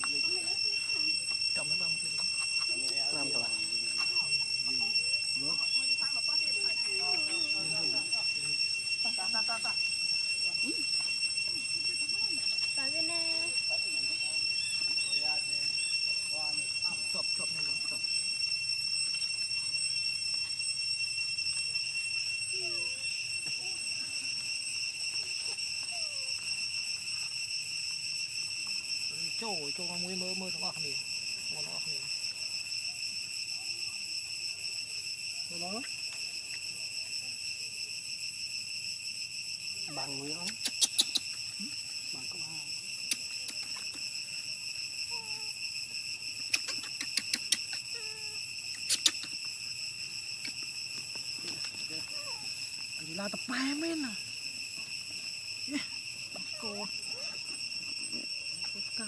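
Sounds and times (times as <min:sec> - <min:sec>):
high-pitched insect drone: 0:00.0 - 0:59.0
sharp clicks: 0:46.4 - 0:47.8, 0:48.8 - 0:49.5.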